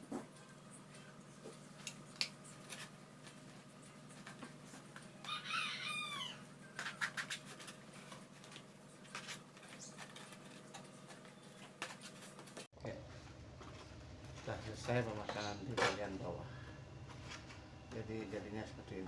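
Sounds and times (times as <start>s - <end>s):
steady low hum: 0.0s - 19.0s
rooster crowing: 5.2s - 6.5s.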